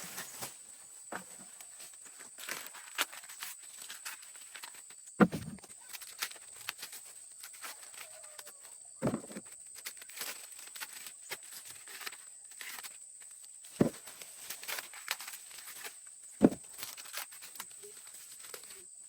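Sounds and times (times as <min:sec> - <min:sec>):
rustling and light crackling: 0:00.0 - 0:19.0
dull thumps: 0:05.2 - 0:05.7, 0:09.0 - 0:09.5, 0:16.4 - 0:16.7.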